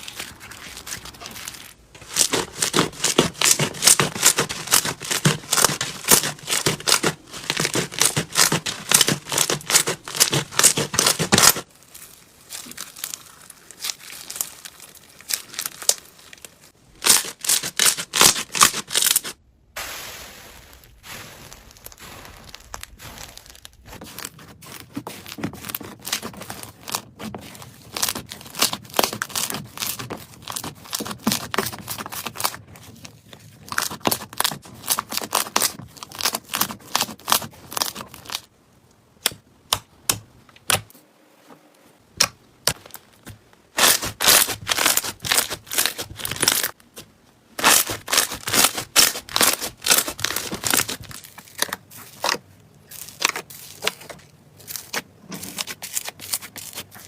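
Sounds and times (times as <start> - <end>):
slime crackling and popping: 0.0 - 19.3, 20.9 - 33.0, 43.8 - 47.0, 47.6 - 57.0.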